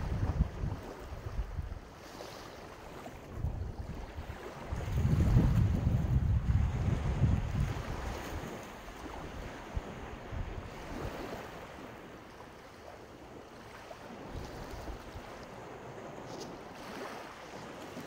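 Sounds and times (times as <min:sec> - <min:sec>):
wind buffeting microphone: 0:00.0 - 0:01.9, 0:03.1 - 0:11.8.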